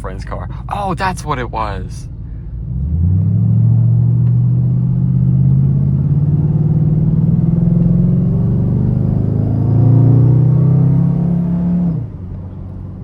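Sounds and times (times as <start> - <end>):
car engine running: 0.0 - 10.1.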